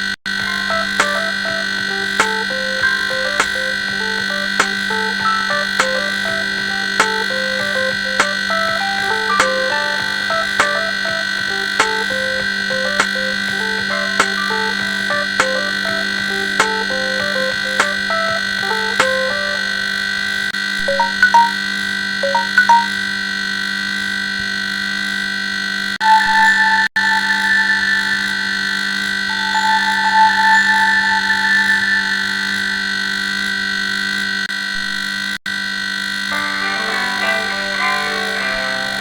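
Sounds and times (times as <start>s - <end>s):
electronic ringtone music: 0.4s - 19.8s, 20.9s - 21.6s, 22.2s - 22.9s.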